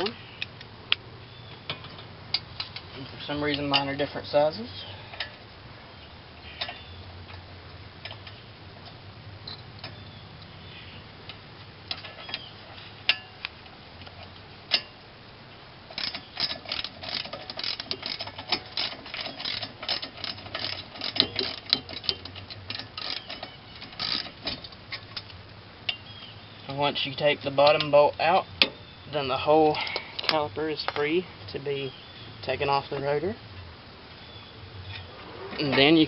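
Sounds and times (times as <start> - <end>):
ratchet wrench clicking: 15.9 - 24.6.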